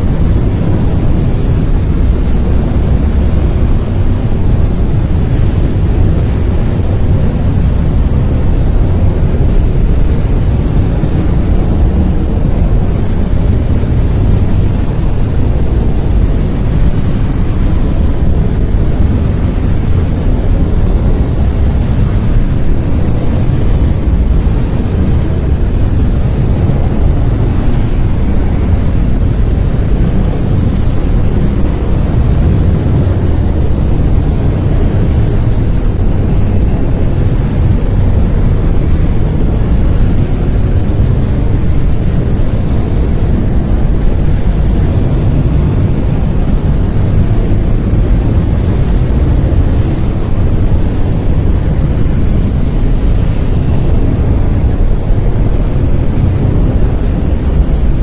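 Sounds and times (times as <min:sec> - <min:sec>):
brown noise: 0:00.0 - 0:58.0.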